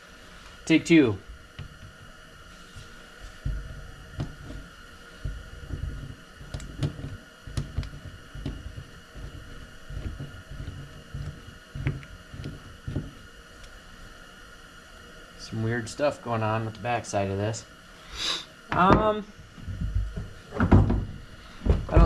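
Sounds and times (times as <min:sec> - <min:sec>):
grease pump clicks and knocks: 0:03.4 - 0:04.6, 0:05.2 - 0:13.2, 0:18.7 - 0:22.0.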